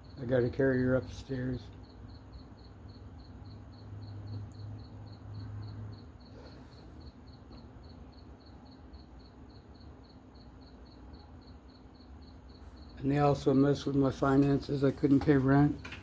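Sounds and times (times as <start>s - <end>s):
crickets chirping: 0.0s - 16.0s.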